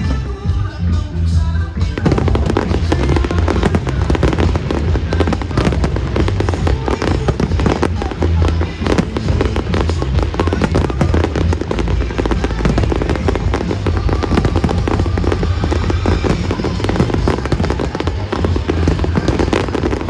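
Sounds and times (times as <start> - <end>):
show music over loudspeakers: 0.0 - 20.0
fireworks bangs and crackles: 1.7 - 20.0.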